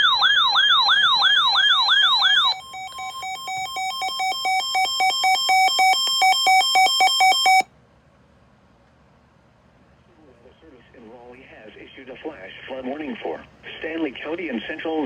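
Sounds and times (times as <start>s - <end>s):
electronic siren alert tone: 0.0s - 7.7s
rapid electronic beeps: 0.0s - 7.7s.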